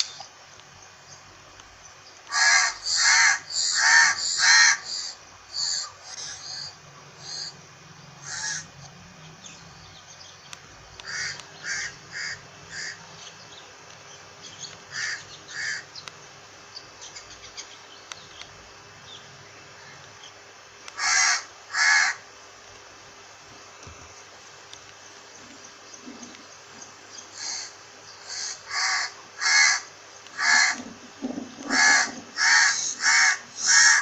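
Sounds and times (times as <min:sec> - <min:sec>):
crow cawing: 0:02.3 - 0:07.6, 0:08.2 - 0:08.8, 0:11.0 - 0:13.1, 0:14.9 - 0:15.9, 0:20.9 - 0:22.3, 0:27.3 - 0:31.0, 0:31.6 - 0:34.0.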